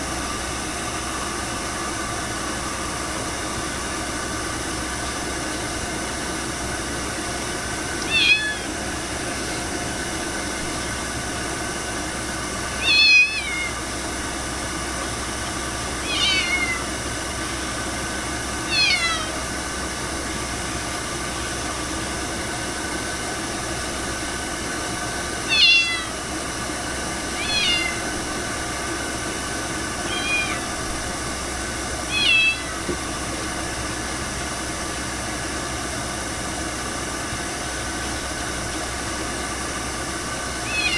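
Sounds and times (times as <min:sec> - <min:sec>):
cat meowing: 0:08.0 - 0:08.8, 0:12.8 - 0:13.8, 0:16.0 - 0:16.9, 0:18.6 - 0:19.5, 0:25.5 - 0:26.2, 0:27.3 - 0:28.1, 0:30.1 - 0:30.8, 0:32.1 - 0:32.8, 0:40.6 - 0:40.9.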